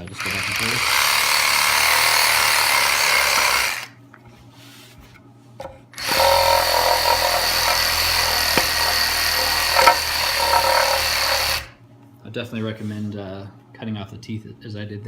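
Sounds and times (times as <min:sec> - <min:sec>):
reciprocating sander on wood: 0:00.0 - 0:03.9, 0:06.0 - 0:11.8.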